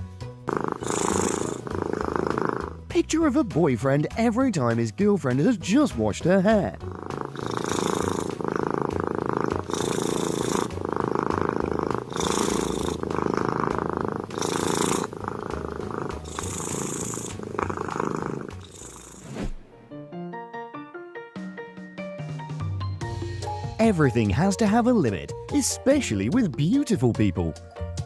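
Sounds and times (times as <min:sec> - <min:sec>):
cat purring loudly: 0:00.3 - 0:02.9, 0:06.2 - 0:19.6.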